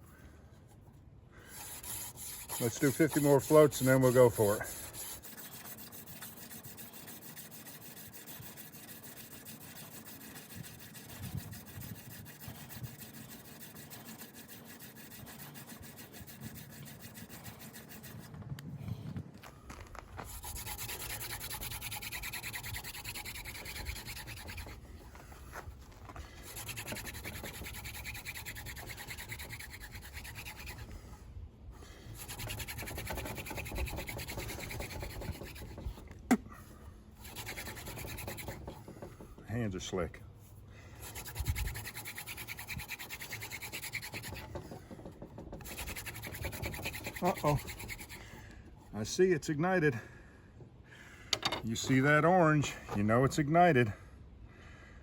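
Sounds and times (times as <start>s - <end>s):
wood rubbing on wood: 1.5s - 18.4s, 19.7s - 31.0s, 32.1s - 36.4s, 37.2s - 40.1s, 41.0s - 49.0s.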